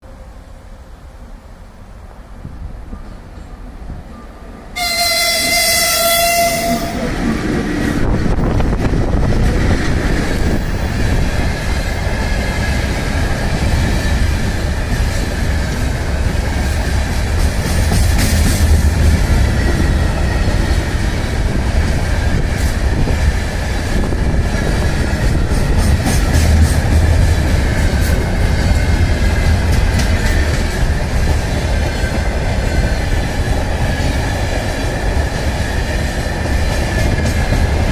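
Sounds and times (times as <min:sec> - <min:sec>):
freight train rumbling past: 0:00.0 - 0:37.9
locomotive horn blast: 0:04.8 - 0:07.2.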